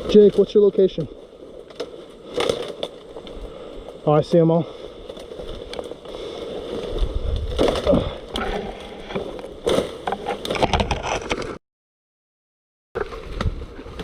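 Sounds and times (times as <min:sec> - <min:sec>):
footsteps through brush: 0:00.0 - 0:10.6
gear and twig clicks: 0:00.0 - 0:11.5.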